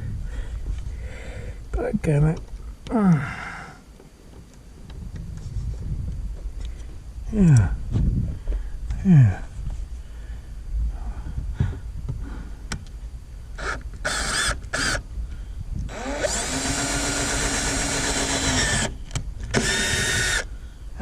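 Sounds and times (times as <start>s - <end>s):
power drill running: 13.6s - 15.0s, 15.9s - 20.5s.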